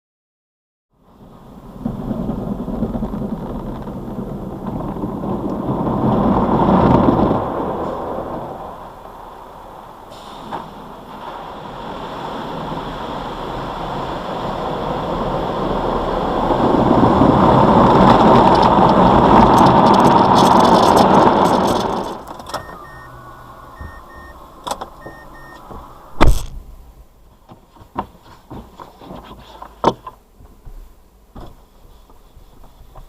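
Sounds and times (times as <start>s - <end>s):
car rushing: 1.0s - 27.9s
short electronic beeps: 22.5s - 24.4s, 25.0s - 26.3s
car door thump: 23.8s - 26.7s.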